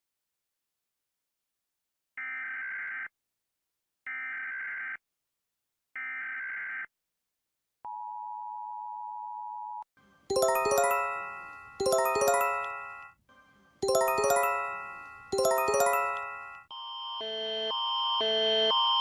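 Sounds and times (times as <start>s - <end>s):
chime notes ringing: 10.3s - 13.0s, 13.8s - 16.6s.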